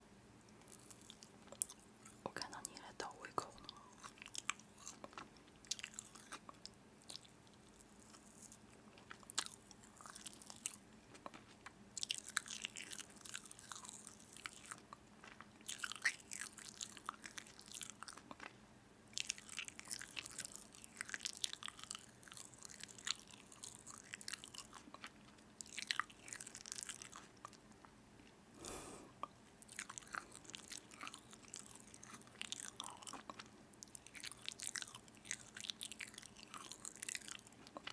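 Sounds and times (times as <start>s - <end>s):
person chewing crunchy food: 0.6s - 2.8s, 3.5s - 27.8s, 28.6s - 37.9s.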